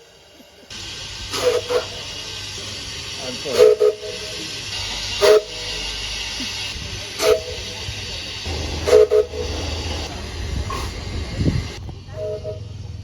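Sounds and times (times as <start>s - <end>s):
locomotive horn toots: 1.3s - 2.0s, 3.5s - 4.3s, 5.2s - 5.8s, 7.2s - 7.8s, 8.5s - 11.5s, 12.1s - 12.8s.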